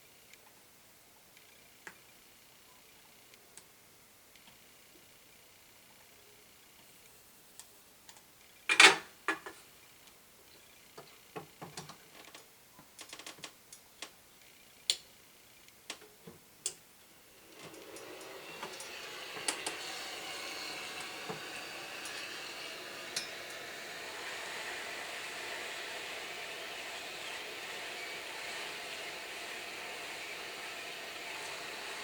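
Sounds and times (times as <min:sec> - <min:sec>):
steady hiss: 0:15.1 - 0:32.0.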